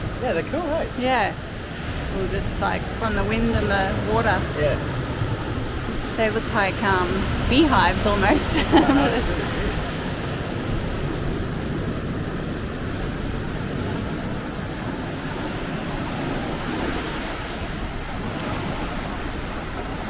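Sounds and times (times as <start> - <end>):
ocean surf washing: 0.0 - 20.0
wind rumbling on microphone: 0.0 - 20.0.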